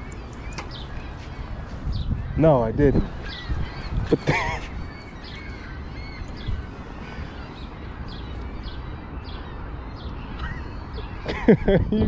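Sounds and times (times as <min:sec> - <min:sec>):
small bird chirping: 0:00.0 - 0:02.5.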